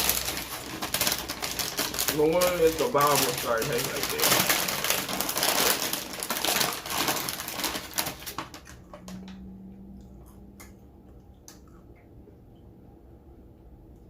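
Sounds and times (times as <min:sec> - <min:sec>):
chewing crunchy chips: 0:00.0 - 0:09.1
short low hum: 0:08.8 - 0:14.0.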